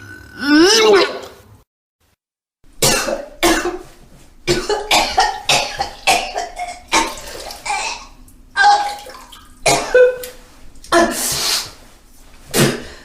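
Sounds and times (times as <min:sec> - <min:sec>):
person retching and vomiting: 0:00.0 - 0:01.4, 0:04.5 - 0:11.4, 0:12.5 - 0:13.0.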